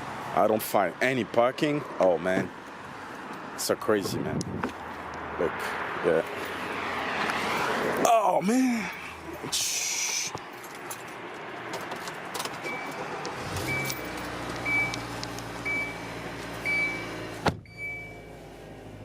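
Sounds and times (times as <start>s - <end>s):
car engine starting and idling: 12.0s - 19.0s
car warning chime beeping: 12.6s - 18.4s.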